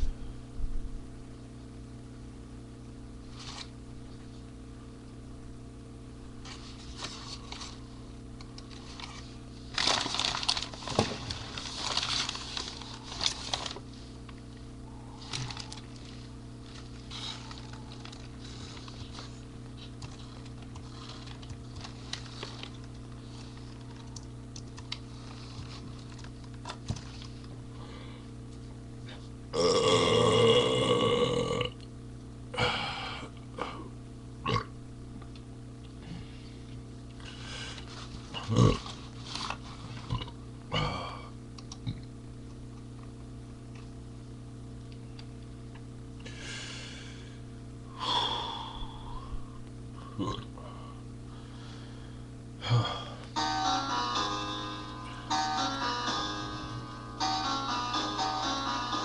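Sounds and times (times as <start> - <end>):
steady electrical hum: 0.0 - 59.0
rustling and handling noises: 3.3 - 3.7, 6.4 - 14.5, 15.1 - 27.6, 37.5 - 40.2
man burping loudly: 29.5 - 31.8, 34.4 - 34.7, 50.1 - 50.6.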